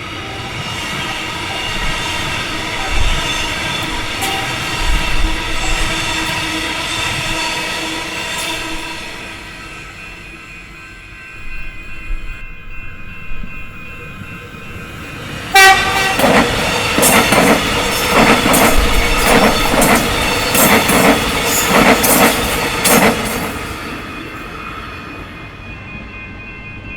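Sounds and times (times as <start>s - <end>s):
train horn blast: 15.5s - 17.1s
train wheels clacking over rail joints: 15.5s - 24.0s.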